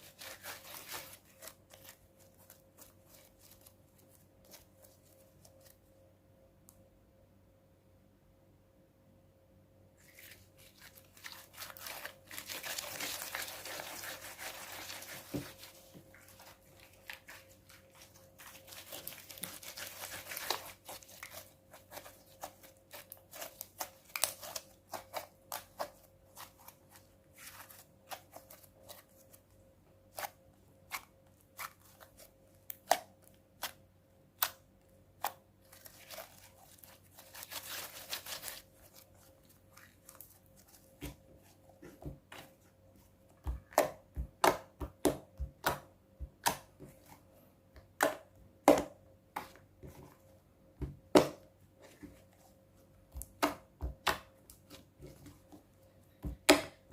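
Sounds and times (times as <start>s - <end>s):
slime wet crackling: 10.1s - 26.8s.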